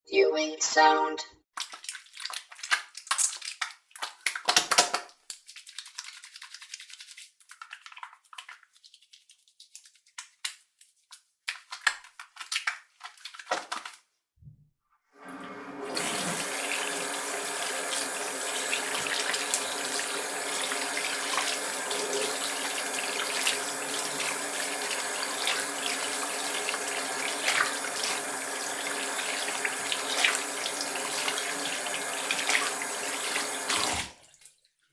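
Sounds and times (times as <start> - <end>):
soapy hands rubbing together: 1.6 - 14.1, 16.0 - 34.6
tap water running into sink: 15.2 - 34.6.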